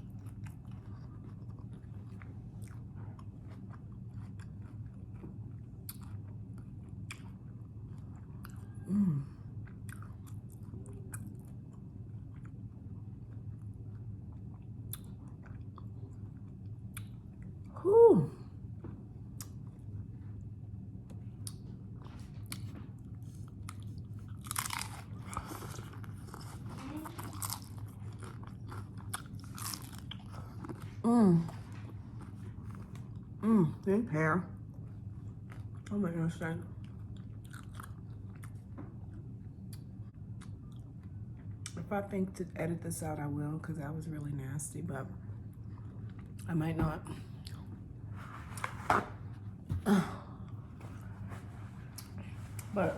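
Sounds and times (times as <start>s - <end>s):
person chewing crunchy taco: 0.0s - 17.7s, 19.2s - 33.4s, 34.6s - 35.9s, 36.8s - 41.8s
low hum: 0.0s - 52.9s.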